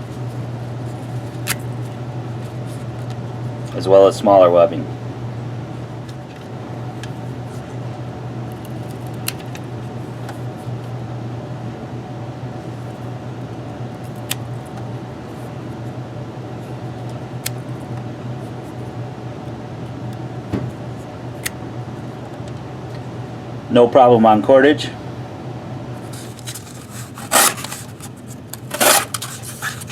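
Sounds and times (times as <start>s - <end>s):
low room hum: 0.0s - 29.9s
knife snapping through material: 1.3s - 1.7s.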